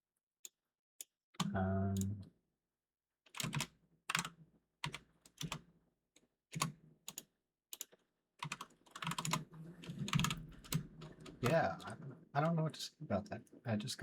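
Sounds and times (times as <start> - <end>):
computer keyboard typing: 3.3 - 5.6, 6.6 - 12.5.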